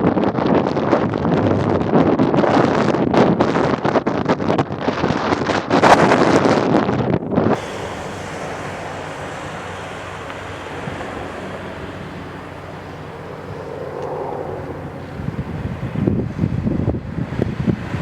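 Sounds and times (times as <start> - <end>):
wind buffeting microphone: 0.0 - 18.0
helicopter turbines and rotor: 7.6 - 18.0.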